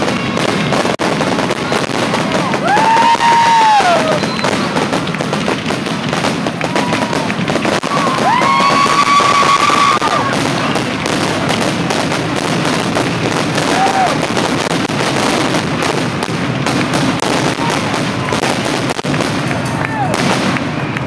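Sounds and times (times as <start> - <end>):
fireworks crackling and popping: 0.0 - 21.0
high-pitched whistle: 4.0 - 4.7.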